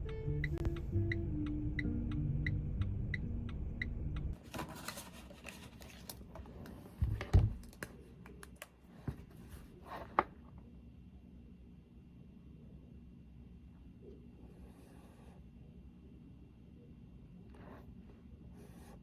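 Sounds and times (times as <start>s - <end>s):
background music: 0.0s - 4.4s.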